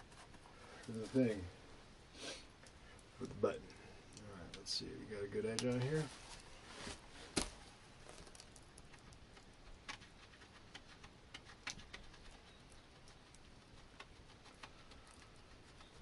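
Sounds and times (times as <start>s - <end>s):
stone flake clicking on leather: 7.4s - 16.0s.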